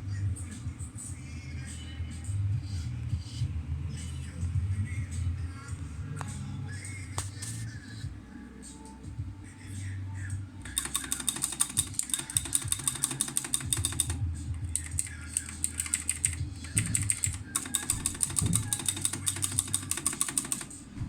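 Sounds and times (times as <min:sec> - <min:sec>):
mechanical keyboard typing: 0:10.6 - 0:20.8.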